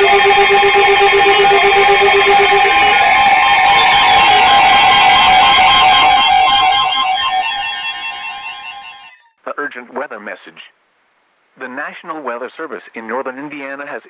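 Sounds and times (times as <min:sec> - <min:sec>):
low pulsing beep: 0:00.0 - 0:09.2
rapid beeping: 0:00.0 - 0:09.2
steady electronic alarm tones: 0:00.0 - 0:09.3.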